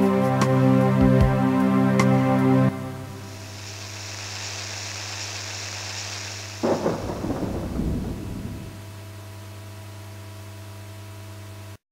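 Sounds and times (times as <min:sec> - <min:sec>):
steady hiss and low hum: 0:02.8 - 0:11.8
thunderclap: 0:03.3 - 0:09.0.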